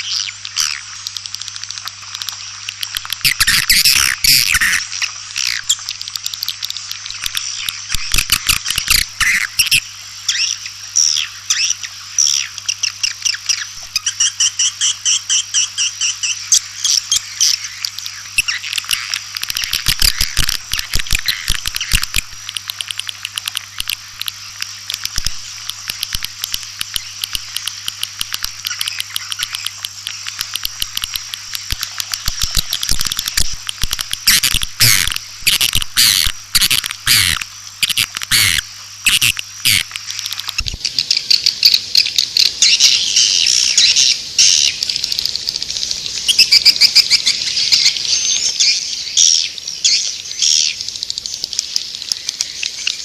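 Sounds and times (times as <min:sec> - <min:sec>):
faint steady hum: 0:00.0 - 0:53.0
swiftlets chattering: 0:19.5 - 0:40.7.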